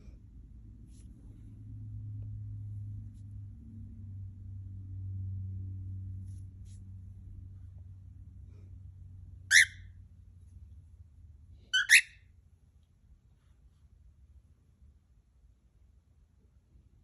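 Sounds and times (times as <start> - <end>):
steady low hum: 0.0 - 17.0
cockatiel chirping: 9.5 - 9.9, 11.7 - 12.2.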